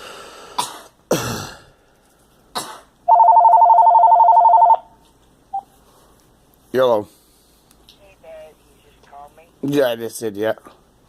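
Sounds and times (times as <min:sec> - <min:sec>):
girl coughing: 0:00.6 - 0:01.6, 0:02.6 - 0:02.9
telephone ringing: 0:03.1 - 0:05.0.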